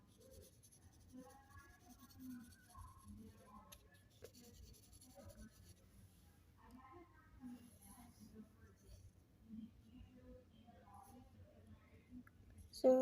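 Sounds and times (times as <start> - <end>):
pencil scratching on paper: 0.0 - 5.8.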